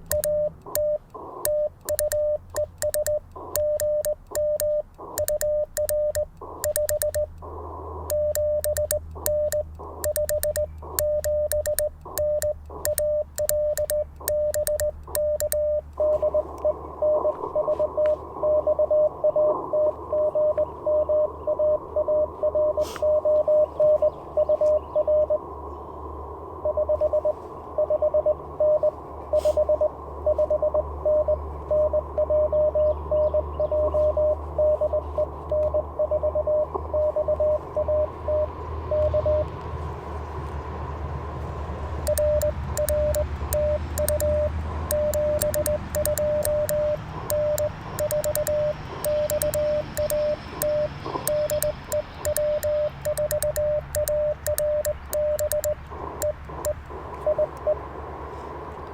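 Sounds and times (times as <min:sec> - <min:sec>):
radio band hiss: 0:00.0 - 0:02.2, 0:06.4 - 0:08.6, 0:09.2 - 0:13.2, 0:16.0 - 0:20.9, 0:22.4 - 0:27.8, 0:28.8 - 0:30.3
morse code sidetone with key clicks: 0:00.0 - 0:25.4, 0:26.6 - 0:39.6, 0:42.0 - 0:57.8
received morse code: 0:00.0 - 0:25.4, 0:26.6 - 0:32.8, 0:33.7 - 0:39.5, 0:42.0 - 0:57.8.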